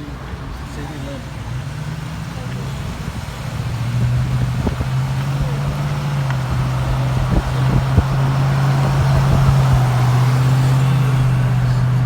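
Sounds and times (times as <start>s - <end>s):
vehicle engine drone: 0.0s - 12.0s
tyre and wind rush: 2.9s - 12.0s.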